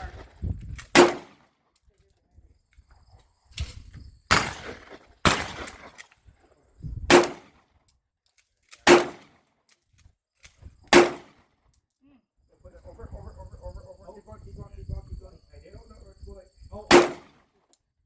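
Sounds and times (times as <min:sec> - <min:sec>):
pistol shots echoing: 0:00.9 - 0:01.5, 0:04.3 - 0:06.1, 0:07.1 - 0:07.6, 0:08.8 - 0:09.4, 0:10.9 - 0:11.4, 0:16.9 - 0:17.4.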